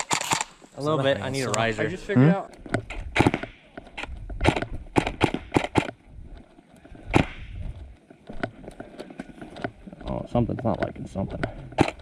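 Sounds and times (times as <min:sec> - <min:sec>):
airsoft gun shots: 0:03.1 - 0:03.6, 0:04.4 - 0:05.9, 0:07.1 - 0:07.5, 0:11.8 - 0:12.0.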